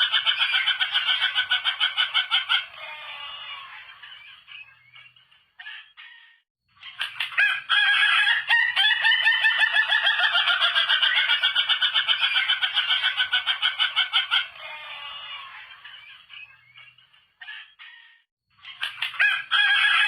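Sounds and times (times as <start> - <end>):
rooster crowing: 7.4 - 10.5, 14.4 - 15.7, 19.2 - 20.0.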